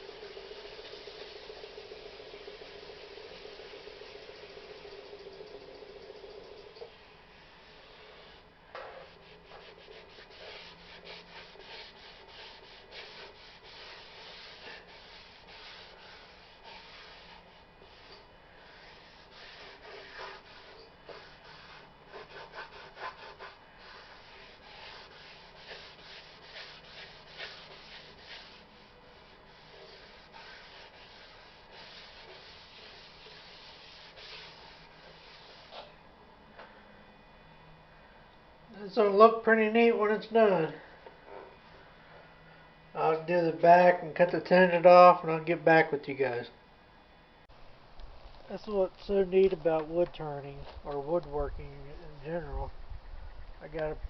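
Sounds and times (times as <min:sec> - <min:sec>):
cloth wiping wood: 0:00.2 - 0:06.8, 0:07.5 - 0:35.9.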